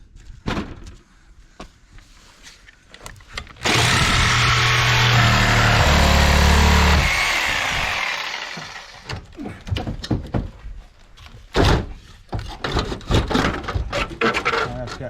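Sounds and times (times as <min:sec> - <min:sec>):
power tool winding down: 0:03.6 - 0:09.1
knocks and clatters of tools: 0:09.0 - 0:15.0.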